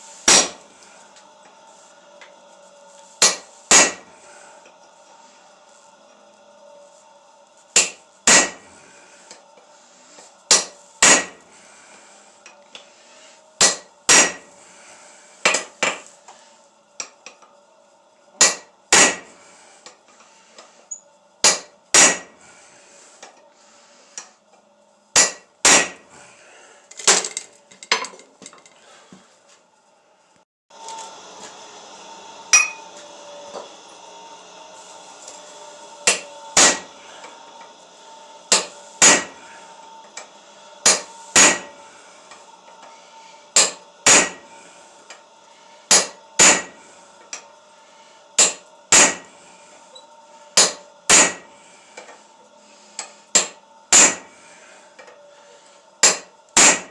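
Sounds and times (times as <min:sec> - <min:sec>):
hammer striking steel on anvil: 0:00.2 - 0:00.7, 0:03.2 - 0:04.1, 0:07.8 - 0:08.6, 0:10.5 - 0:11.4, 0:13.6 - 0:14.5, 0:18.4 - 0:19.3, 0:21.4 - 0:22.4, 0:25.2 - 0:26.0, 0:32.5 - 0:32.9, 0:36.0 - 0:37.0, 0:38.5 - 0:39.4, 0:40.8 - 0:41.8, 0:43.6 - 0:44.5, 0:45.9 - 0:47.4, 0:48.4 - 0:49.3, 0:50.6 - 0:51.5, 0:53.3 - 0:54.3, 0:56.0 - 0:56.9.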